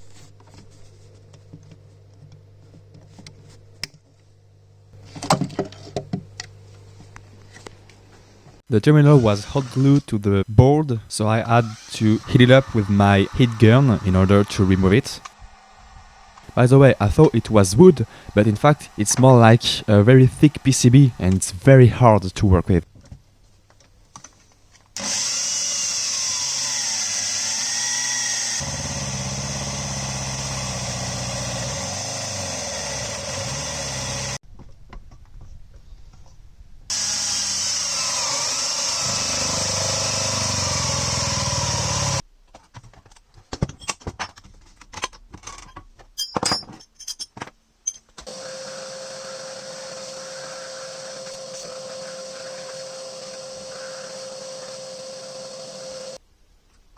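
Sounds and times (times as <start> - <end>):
handheld power tool running: 9.1 - 10.0, 11.4 - 21.4, 25.0 - 34.4, 36.9 - 42.2, 48.2 - 56.2.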